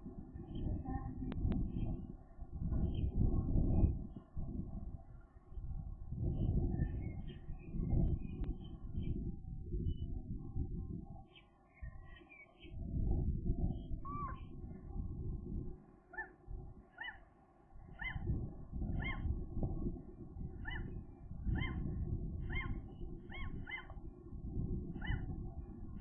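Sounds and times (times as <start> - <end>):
steady low rumble: 0.0 - 11.3, 11.9 - 16.9, 17.7 - 26.0
gull calls: 14.1 - 14.4, 18.0 - 18.3, 19.0 - 19.3, 20.6 - 21.8, 22.5 - 24.0, 25.0 - 25.3.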